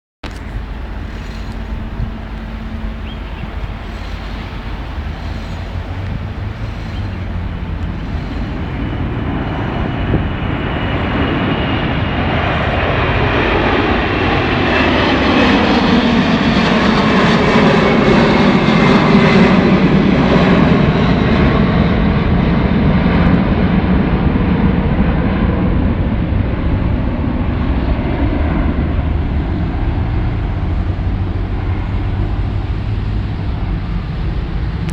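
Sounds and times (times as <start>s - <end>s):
jet airliner taking off: 0.2s - 34.9s.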